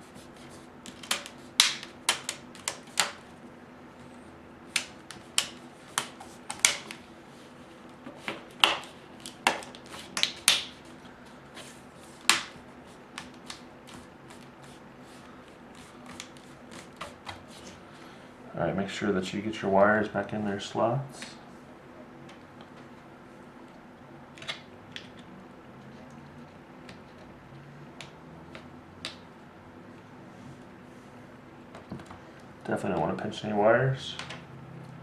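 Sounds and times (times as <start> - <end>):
plastic clips snapping: 0.8 - 3.2, 8.3 - 10.8.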